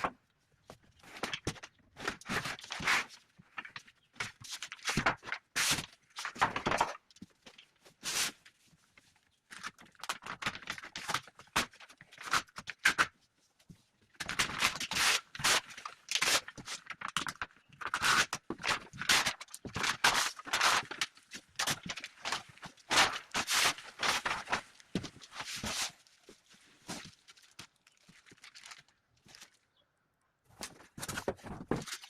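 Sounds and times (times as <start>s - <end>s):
packaging rustling and crackling: 14.2s - 29.6s, 30.6s - 32.0s.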